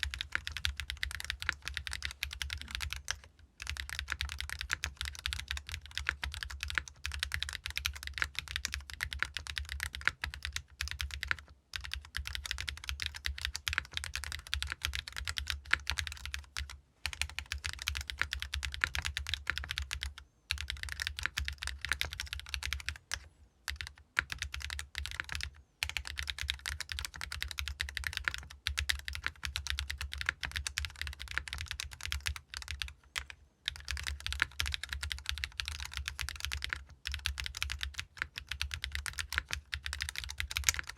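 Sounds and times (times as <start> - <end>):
typing on mechanical keyboard: 0.0 - 40.9.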